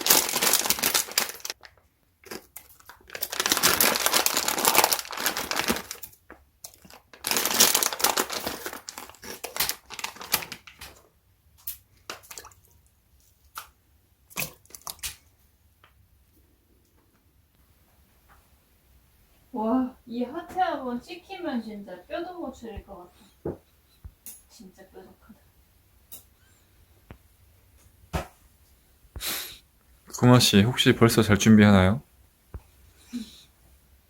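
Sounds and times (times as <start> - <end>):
crinkly wrapping being crumpled: 0.0 - 12.6.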